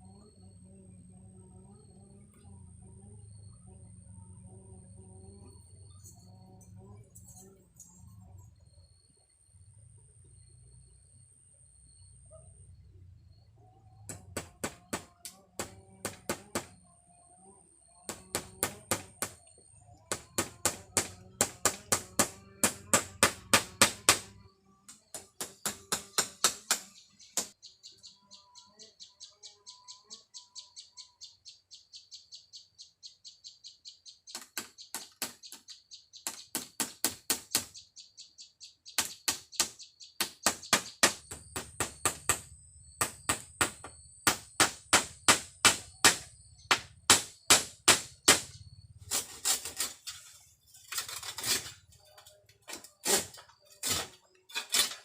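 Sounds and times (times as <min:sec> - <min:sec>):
high chirping of insects or birds: 0:00.0 - 0:55.0
tool knocking on bamboo: 0:14.1 - 0:16.8, 0:18.1 - 0:19.4, 0:20.1 - 0:24.4, 0:39.0 - 0:48.6.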